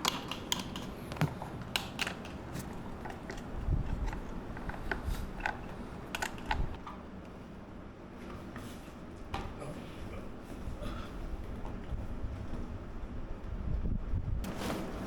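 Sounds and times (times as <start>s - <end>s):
plastic parts clicking: 0.0s - 6.8s.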